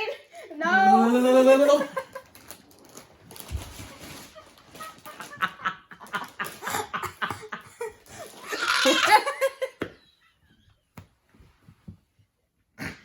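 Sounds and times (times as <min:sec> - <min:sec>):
people laughing: 0:01.4 - 0:02.3, 0:04.4 - 0:09.8.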